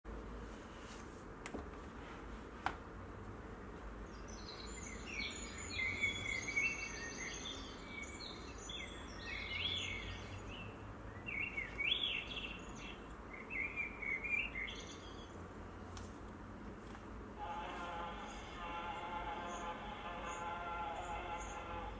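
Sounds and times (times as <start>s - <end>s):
recorded bird chirping: 4.0s - 15.8s, 17.4s - 21.9s.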